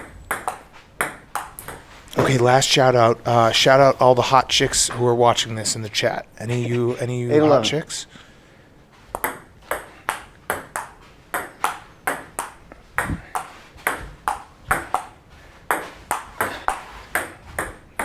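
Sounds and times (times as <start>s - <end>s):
table tennis ball clicking: 0.0s - 1.9s, 9.2s - 17.8s.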